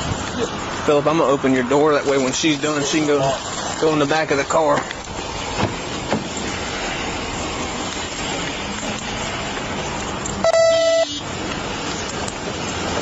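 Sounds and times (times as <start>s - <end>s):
road and vehicle noise: 0.0s - 13.0s.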